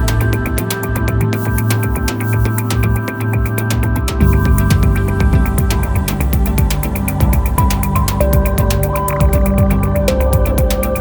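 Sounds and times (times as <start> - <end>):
electronic music: 0.0 - 11.0.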